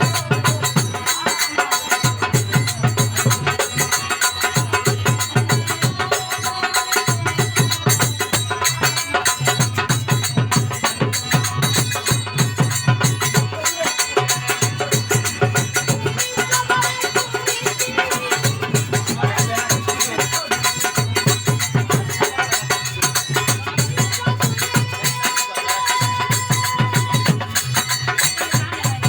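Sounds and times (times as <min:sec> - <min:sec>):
fast hand-drum beat: 0:00.0 - 0:29.0.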